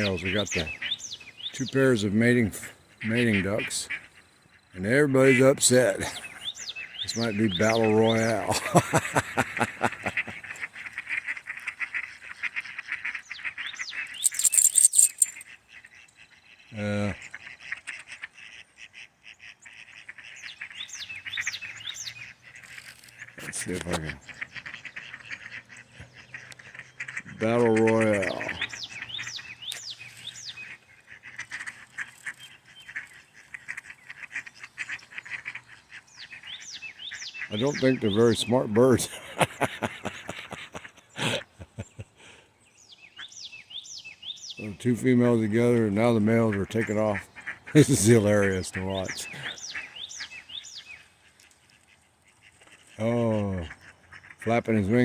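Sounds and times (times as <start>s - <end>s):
ducks squabbling and quacking: 0.0s - 4.2s, 4.8s - 42.5s, 44.6s - 55.0s
high falling bird chirps: 13.2s - 16.6s, 28.3s - 31.2s.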